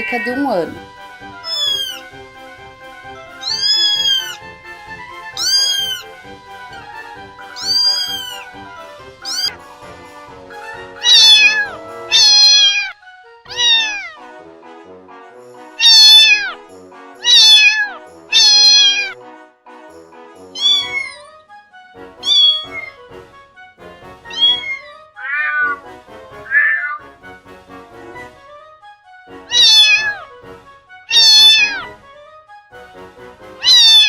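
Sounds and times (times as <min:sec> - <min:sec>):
cat meowing: 0:00.0 - 0:00.3, 0:01.4 - 0:02.1, 0:03.3 - 0:04.4, 0:05.3 - 0:06.1, 0:07.4 - 0:08.5, 0:09.2 - 0:09.6, 0:11.0 - 0:14.2, 0:15.8 - 0:16.6, 0:17.2 - 0:19.2, 0:20.6 - 0:21.4, 0:22.2 - 0:23.0, 0:24.3 - 0:25.8, 0:26.5 - 0:27.0, 0:29.5 - 0:30.3, 0:31.1 - 0:31.9, 0:33.6 - 0:34.0.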